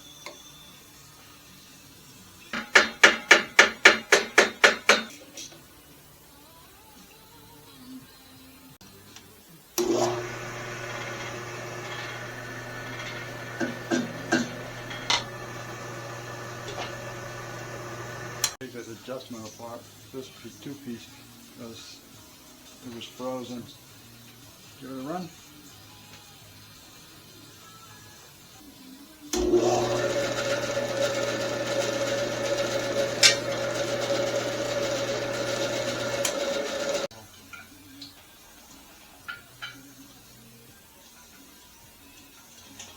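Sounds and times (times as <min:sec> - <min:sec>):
electric motor humming: 0:09.8 - 0:18.6, 0:29.4 - 0:37.1.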